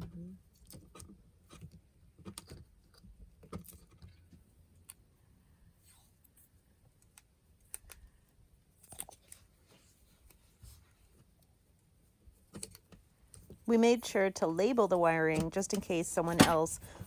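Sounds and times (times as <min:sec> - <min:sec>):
low background hum: 0:00.0 - 0:17.0.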